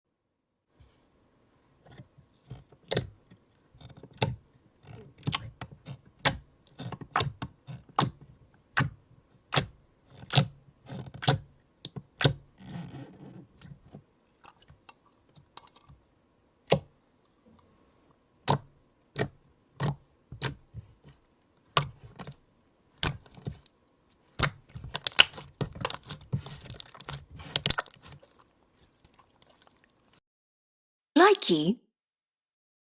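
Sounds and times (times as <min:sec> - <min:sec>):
slime squishing: 0:04.1 - 0:11.4, 0:18.4 - 0:30.2
slime popping wetly: 0:24.4 - 0:26.1.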